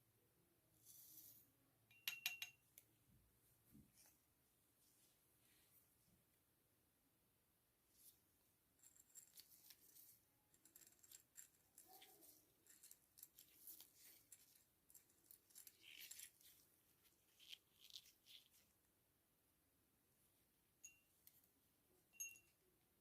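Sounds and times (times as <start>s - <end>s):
small objects clicking and rattling: 10.6s - 16.6s.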